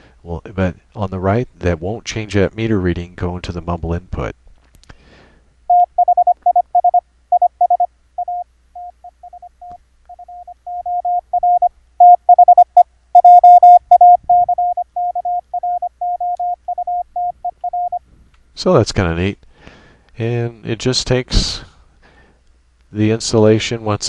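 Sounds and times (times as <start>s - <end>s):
morse code tone: 5.7s - 18.0s.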